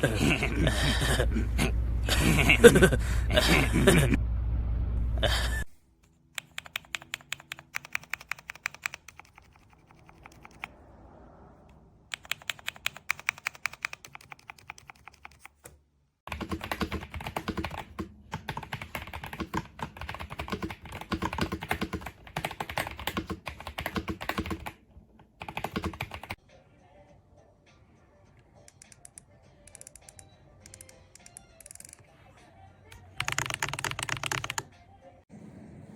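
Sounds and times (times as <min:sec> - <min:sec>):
mechanical keyboard typing: 0:06.4 - 0:10.7, 0:12.1 - 0:15.7, 0:16.3 - 0:26.4, 0:33.2 - 0:34.7.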